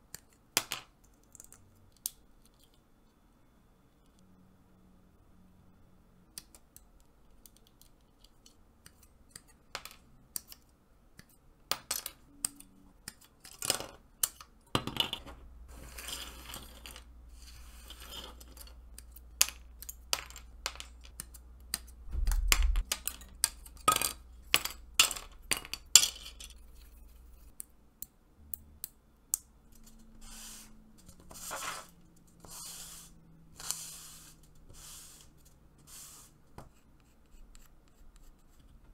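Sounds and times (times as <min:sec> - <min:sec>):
plastic rubbing or scraping: 0:29.9 - 0:36.3.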